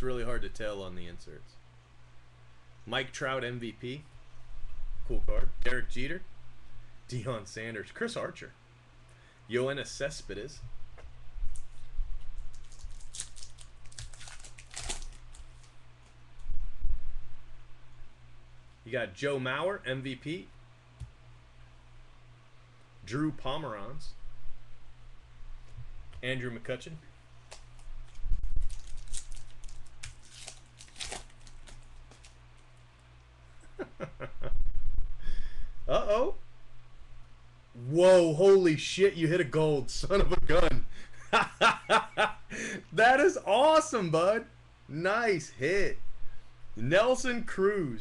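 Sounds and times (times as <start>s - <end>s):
steady low hum: 0.0s - 48.0s
foil wrapper crinkling: 12.4s - 15.8s, 27.5s - 32.7s.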